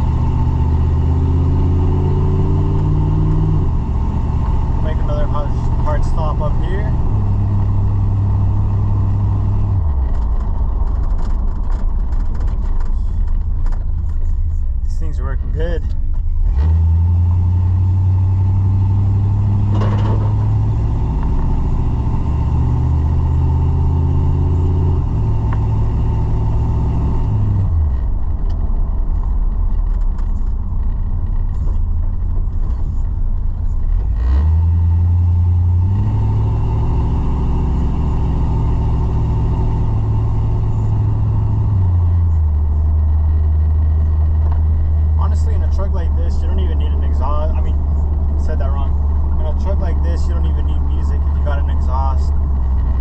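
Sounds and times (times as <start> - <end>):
truck engine under load: 0.0 - 53.0.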